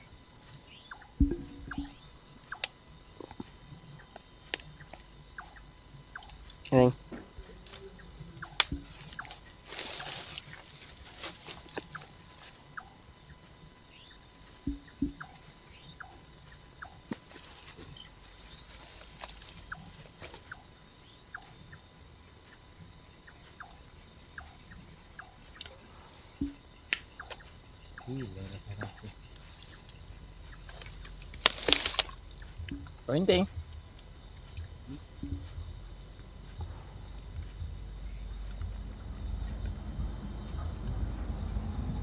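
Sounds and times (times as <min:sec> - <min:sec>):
night insects trilling: 0:00.0 - 0:42.0
sharp knocks: 0:01.2 - 0:02.0, 0:14.7 - 0:15.3.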